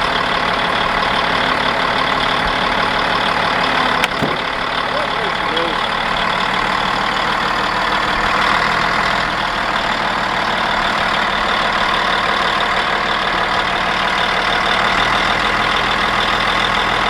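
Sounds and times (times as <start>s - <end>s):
bulldozer diesel engine running: 0.0s - 17.0s.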